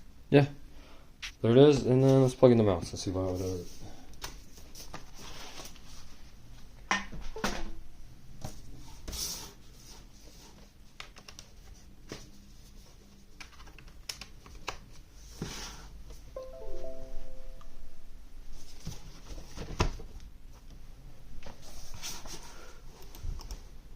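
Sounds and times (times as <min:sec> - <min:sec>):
computer mouse clicks and taps: 0:11.0 - 0:11.5.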